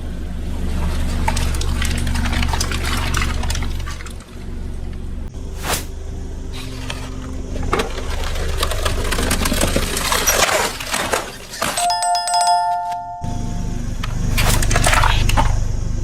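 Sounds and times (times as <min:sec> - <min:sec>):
low engine hum: 0:00.0 - 0:11.0, 0:11.8 - 0:16.0
car tyre crushing objects: 0:00.3 - 0:11.9, 0:14.0 - 0:15.7
dense crackling and crunching: 0:00.6 - 0:05.9, 0:06.5 - 0:11.8
bell-like electronic ringing: 0:11.8 - 0:13.8.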